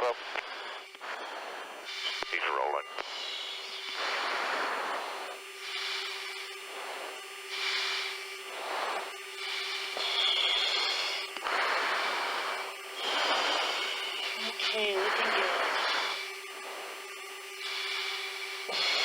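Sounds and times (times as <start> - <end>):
breathing into mask microphone: 0.0 - 2.2, 3.0 - 17.0
steady intercom hum: 0.0 - 19.0.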